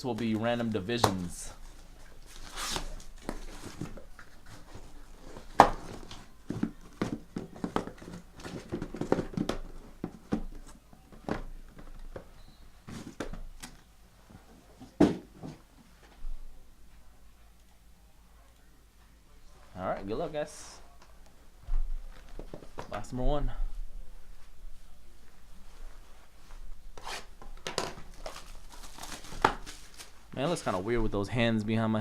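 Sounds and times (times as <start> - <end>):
card packs rustling: 0.0 - 13.9, 27.0 - 31.3
card boxes knocking and tapping: 5.3 - 13.8, 14.8 - 15.6.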